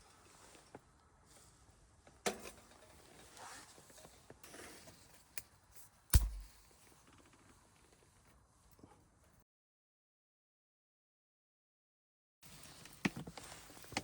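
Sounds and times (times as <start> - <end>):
heavy thump: 6.2 - 6.5
sharp clicks and knocks: 6.2 - 6.5.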